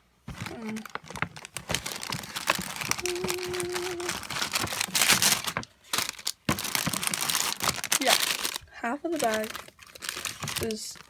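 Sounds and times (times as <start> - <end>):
candy packets crinkling: 0.3 - 11.0.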